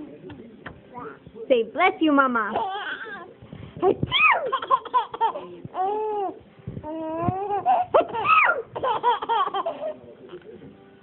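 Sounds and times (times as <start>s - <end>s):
baby laughing and squealing: 2.6s - 10.0s.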